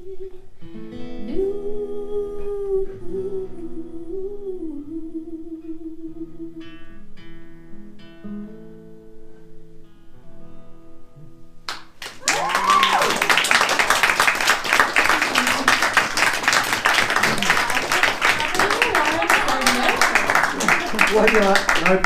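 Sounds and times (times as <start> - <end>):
audience applause with whoop: 12.0 - 22.0.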